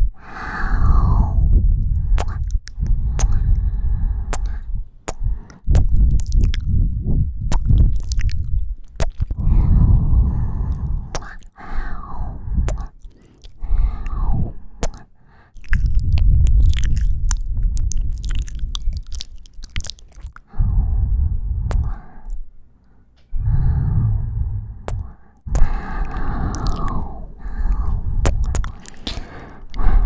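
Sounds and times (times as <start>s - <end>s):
breath on microphone: 0.0s - 8.0s, 9.2s - 17.1s, 20.4s - 30.0s
wet kissing lip smacks: 2.2s - 3.4s, 4.3s - 6.8s, 7.4s - 9.4s, 11.1s - 11.6s, 12.7s - 13.6s, 14.8s - 20.4s, 21.7s - 22.4s, 24.9s - 27.1s, 27.8s - 29.9s.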